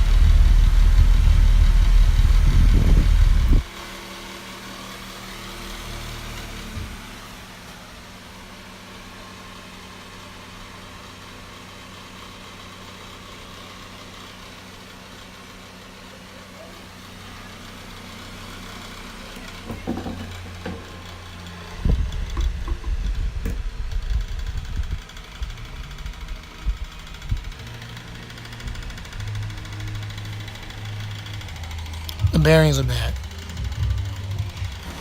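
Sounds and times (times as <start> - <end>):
low knocking and rattling: 0.0 - 3.6, 21.8 - 25.0
fan motor hum and rushing air: 0.0 - 4.0, 20.3 - 35.0.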